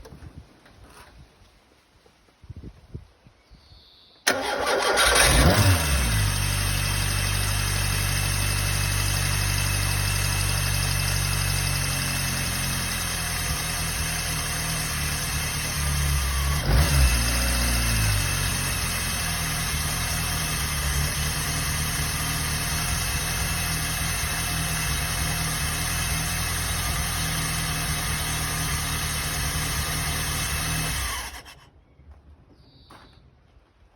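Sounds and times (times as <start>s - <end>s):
engine revving: 4.3s - 31.6s
car engine starting and idling: 4.3s - 31.7s.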